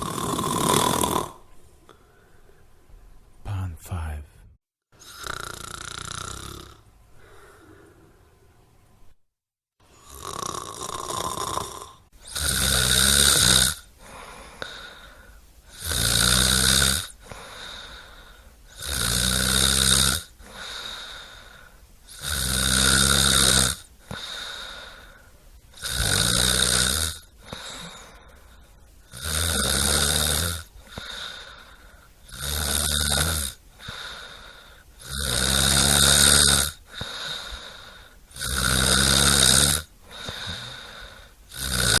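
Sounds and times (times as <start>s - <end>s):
person snoring: 0.0s - 2.0s, 5.0s - 8.2s, 9.9s - 28.4s, 29.1s - 42.0s
quiet breathing: 1.4s - 4.5s, 7.1s - 8.8s, 13.9s - 15.7s, 17.1s - 18.8s, 20.3s - 22.1s, 23.9s - 25.8s, 27.2s - 29.1s, 30.6s - 32.3s, 33.6s - 35.0s, 36.8s - 38.4s, 39.8s - 42.0s.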